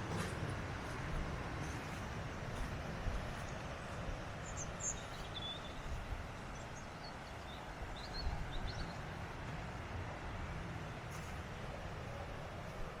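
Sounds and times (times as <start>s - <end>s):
outdoor rumble and hiss: 0.0s - 13.0s.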